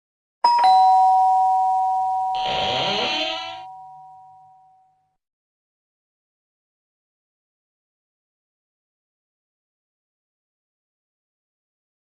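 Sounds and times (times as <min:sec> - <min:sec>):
ding-dong doorbell chime: 0:00.4 - 0:05.2
short rough rasping sound: 0:02.4 - 0:03.7.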